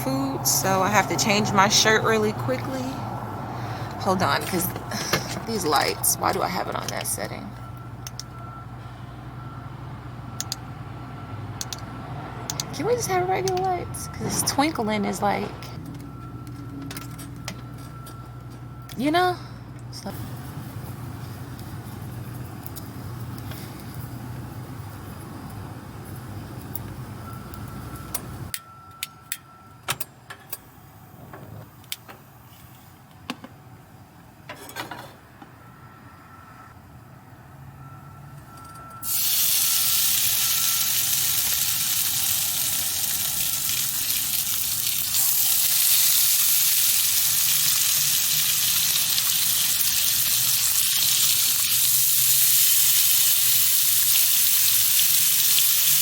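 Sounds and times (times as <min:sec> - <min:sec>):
bacon sizzling in frying pan: 0:39.0 - 0:56.0.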